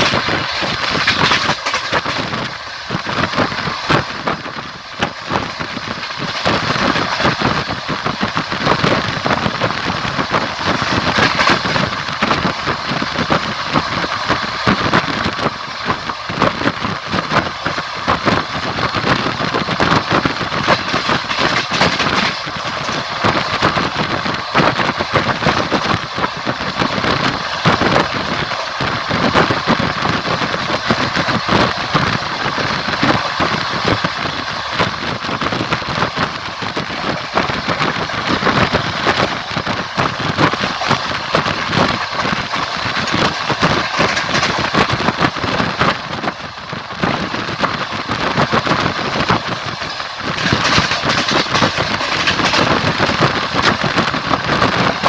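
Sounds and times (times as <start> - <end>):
train wheels clattering over rails: 0.0 - 55.0.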